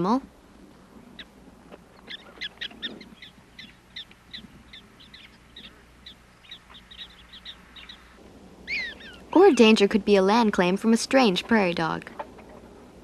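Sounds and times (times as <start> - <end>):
prairie dogs chirping barks: 0.9 - 9.9.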